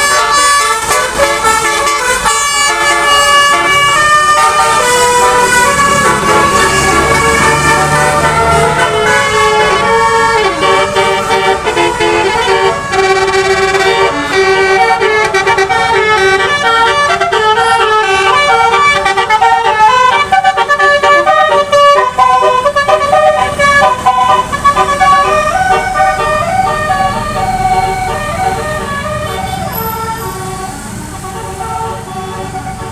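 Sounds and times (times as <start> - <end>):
bus horn playing a melody: 0.0 - 32.9.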